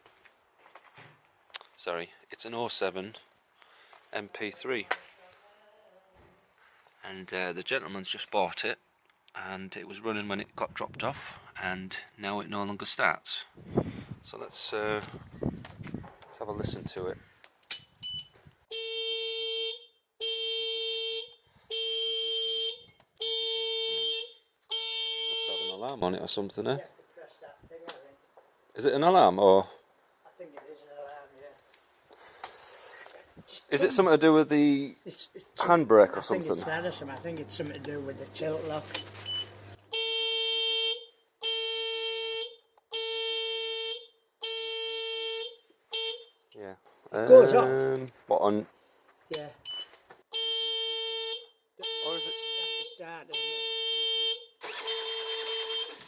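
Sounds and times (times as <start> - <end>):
scooter alarm buzzer beeping: 18.0 - 21.0, 21.7 - 25.8, 39.0 - 46.4, 49.7 - 56.0.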